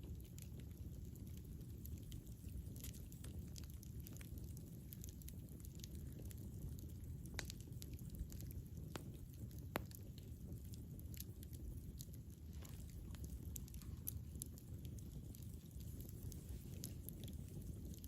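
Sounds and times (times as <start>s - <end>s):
burning wood crackling: 0.0s - 18.0s
low rumble of flames: 0.0s - 18.0s
sharp fire pops: 7.2s - 18.0s.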